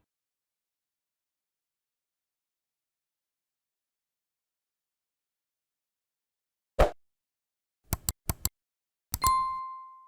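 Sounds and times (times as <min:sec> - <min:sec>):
sharp clicks: 0:07.9 - 0:08.5.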